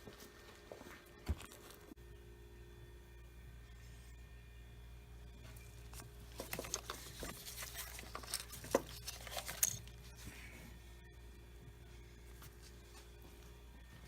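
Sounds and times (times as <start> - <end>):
steady low hum: 0.0 - 14.0
handling clicks taps and rustles: 5.9 - 9.9.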